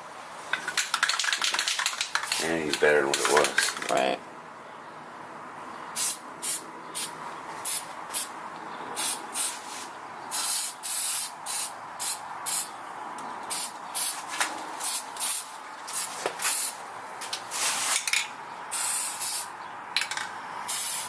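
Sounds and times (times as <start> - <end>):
spray nozzle hissing in bursts: 6.0 - 8.3, 9.0 - 9.6, 10.3 - 12.7, 13.5 - 14.2, 14.8 - 16.8, 18.7 - 19.5, 20.7 - 21.0.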